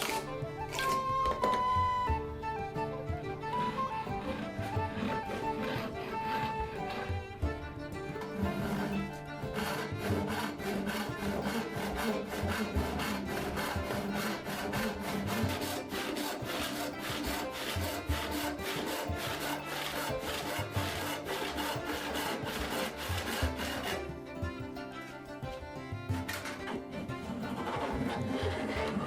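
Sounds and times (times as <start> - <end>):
hand saw cutting wood: 0.0 - 29.0.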